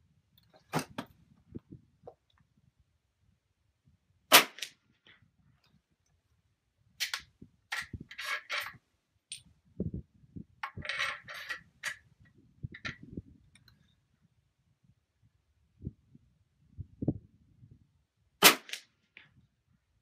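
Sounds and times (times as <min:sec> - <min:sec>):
air rifle shot: 0:04.3 - 0:04.8, 0:18.4 - 0:18.9
metallic clicks and scraping: 0:07.0 - 0:09.5, 0:10.6 - 0:12.1.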